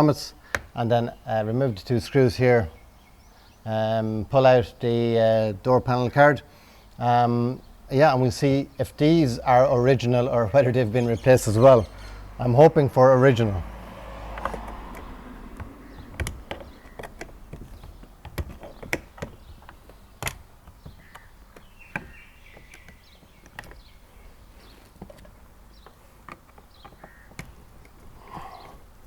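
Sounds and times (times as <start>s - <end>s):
birds calling faintly: 0.0s - 29.0s
tools clicking on door trim: 14.3s - 28.9s.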